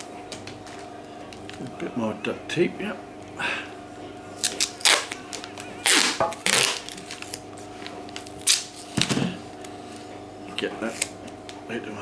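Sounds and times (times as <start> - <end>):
duct tape ripping: 4.4 - 7.4, 8.1 - 9.1, 10.8 - 11.5.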